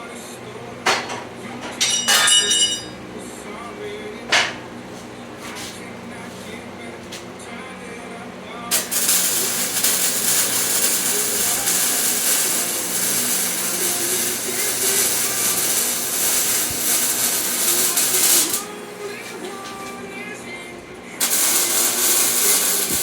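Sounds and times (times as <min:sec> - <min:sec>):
welding arc crackling and hissing: 0:08.7 - 0:20.0, 0:21.2 - 0:23.0.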